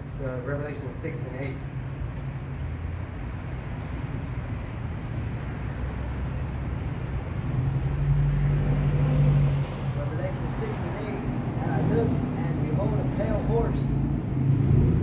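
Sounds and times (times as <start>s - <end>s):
motor vehicle rumble: 0.0s - 15.0s.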